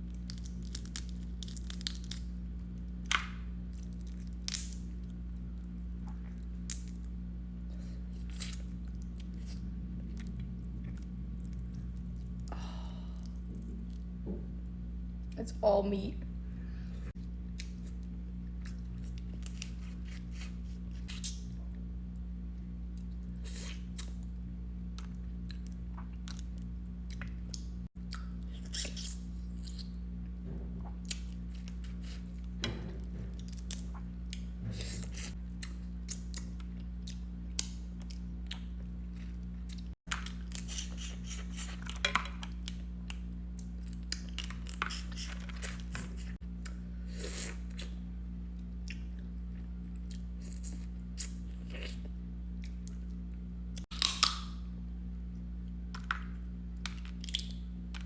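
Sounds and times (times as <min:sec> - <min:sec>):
steady low hum: 0:00.0 - 0:58.0
crab shells cracking: 0:00.2 - 0:02.3, 0:03.0 - 0:04.9, 0:53.9 - 0:54.6.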